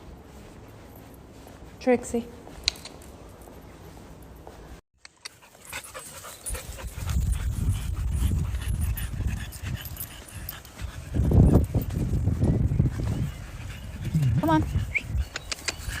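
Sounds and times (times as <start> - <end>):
dog panting: 5.2 - 16.0.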